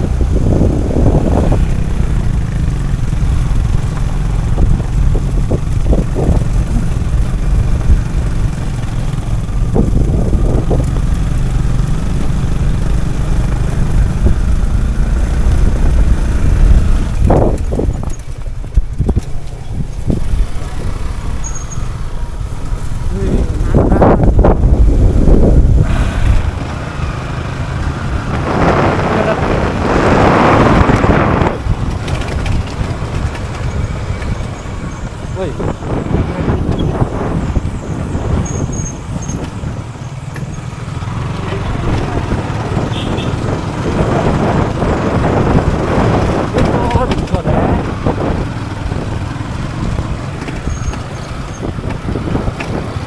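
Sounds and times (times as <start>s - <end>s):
broad rushing noise: 0.0s - 4.9s, 19.2s - 38.4s
motorcycle engine rumble: 0.0s - 53.0s
wind buffeting microphone: 0.0s - 53.0s.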